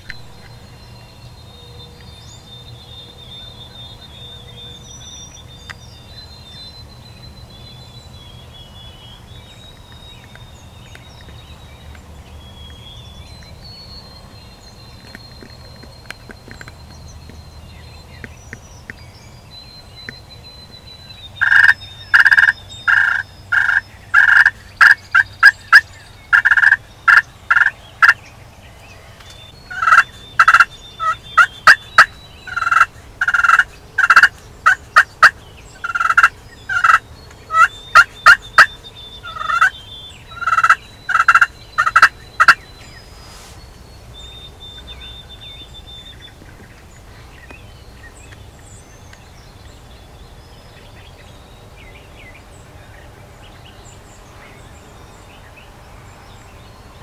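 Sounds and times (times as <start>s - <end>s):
turkey yelping: 21.4s - 28.2s, 29.7s - 39.7s, 40.3s - 42.6s.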